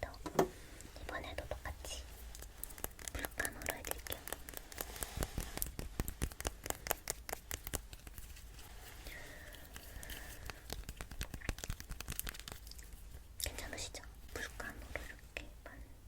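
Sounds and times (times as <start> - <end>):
tapping and scratching clicks: 2.3 - 8.4, 10.1 - 12.9.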